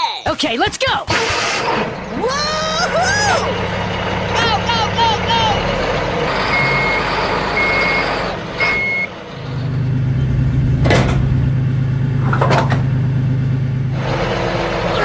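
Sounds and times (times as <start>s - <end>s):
vehicle engine humming: 1.6s - 15.0s
reversing beep: 6.4s - 9.1s.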